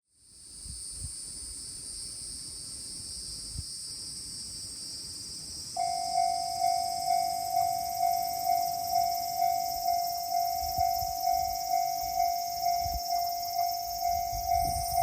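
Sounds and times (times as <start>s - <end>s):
insect chorus chirring: 0.2s - 15.0s
level crossing bell ringing: 5.8s - 15.0s.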